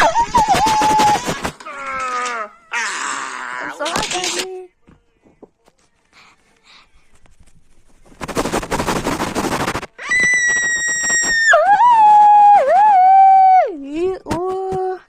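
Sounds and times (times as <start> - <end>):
crackling noise burst: 7.8 - 11.2.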